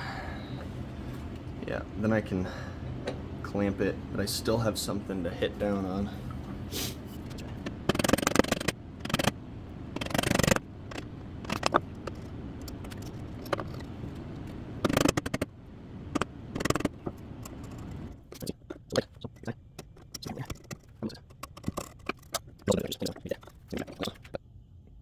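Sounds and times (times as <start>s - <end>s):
quick clicks: 7.3s - 9.4s, 10.0s - 15.5s
hand tool scraping wood: 9.9s - 13.9s.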